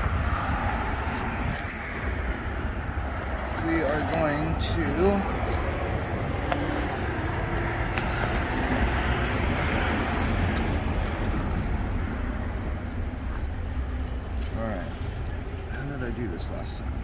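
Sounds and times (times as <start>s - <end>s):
wind on microphone: 0.0s - 12.6s
traffic noise: 0.0s - 17.0s.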